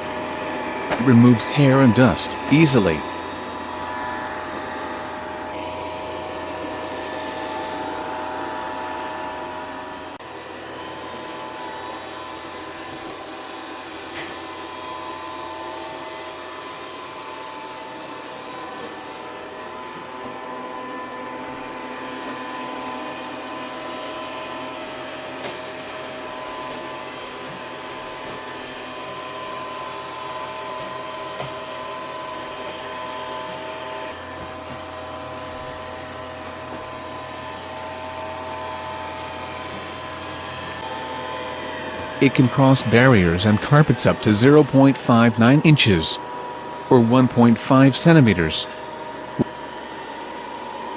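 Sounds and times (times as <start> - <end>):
robot vacuum cleaner running: 0.0 - 50.9.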